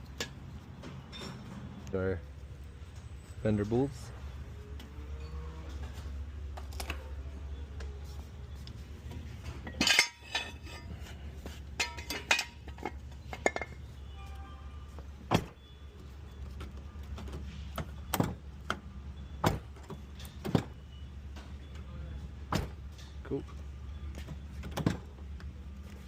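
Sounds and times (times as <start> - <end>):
metal clatter: 9.4 - 13.8.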